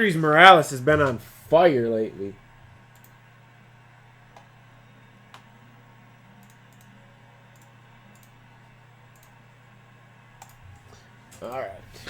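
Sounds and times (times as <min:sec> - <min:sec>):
low electrical hum: 0:00.0 - 0:12.0
faint sharp clicks: 0:06.4 - 0:06.9.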